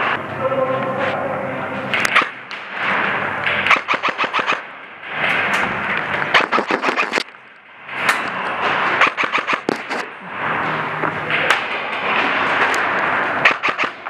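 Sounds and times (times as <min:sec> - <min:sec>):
airsoft guns firing: 0:01.9 - 0:05.2, 0:06.3 - 0:07.4, 0:09.0 - 0:10.1, 0:13.4 - 0:14.0.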